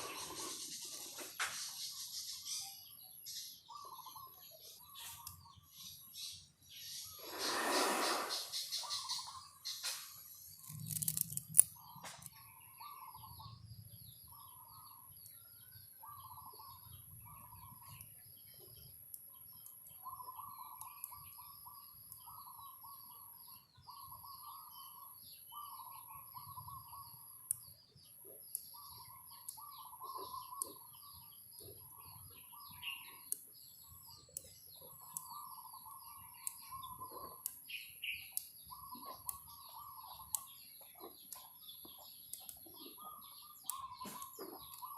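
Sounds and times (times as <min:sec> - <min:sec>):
lower longer bird calls: 0:00.0 - 0:18.5, 0:19.1 - 0:44.9
small birds chirping: 0:00.0 - 0:44.9
magnetic metal balls clicking: 0:10.4 - 0:12.4.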